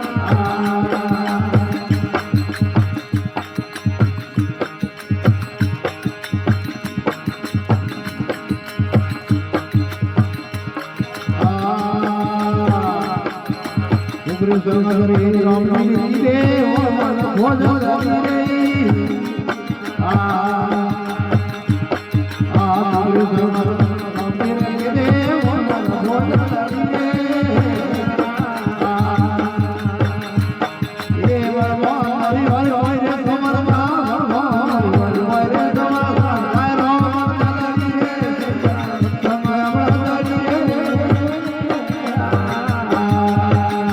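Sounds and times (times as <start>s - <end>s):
devotional song melody: 0.0s - 43.9s
hand drum rhythm: 0.0s - 43.9s.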